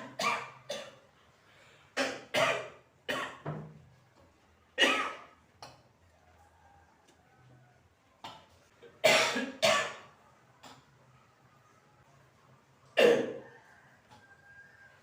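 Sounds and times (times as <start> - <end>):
person coughing: 9.0 - 10.1, 13.0 - 13.4.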